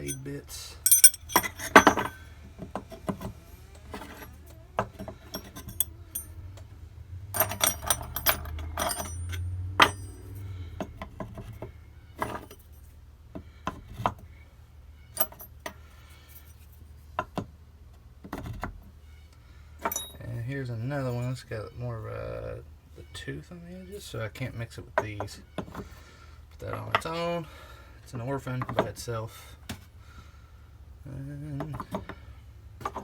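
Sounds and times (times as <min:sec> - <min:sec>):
drill bits clinking together: 0:00.0 - 0:02.2, 0:05.3 - 0:06.3, 0:07.4 - 0:10.2, 0:15.2 - 0:15.4.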